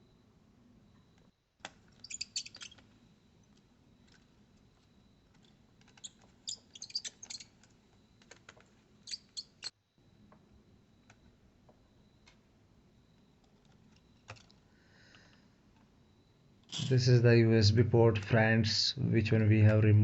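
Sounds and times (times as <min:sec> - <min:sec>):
faint high whine: 0:00.0 - 0:20.0
clicks and taps of laptop parts: 0:05.3 - 0:08.7.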